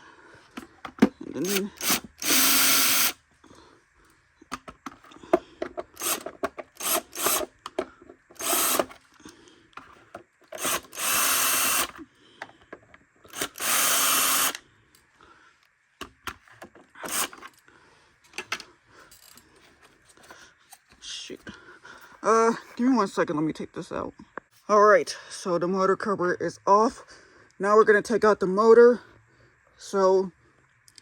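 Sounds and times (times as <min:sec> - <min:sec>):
cordless drill driving screws: 0:01.4 - 0:03.2, 0:05.8 - 0:09.0, 0:10.5 - 0:12.0, 0:13.3 - 0:14.6, 0:17.0 - 0:17.5.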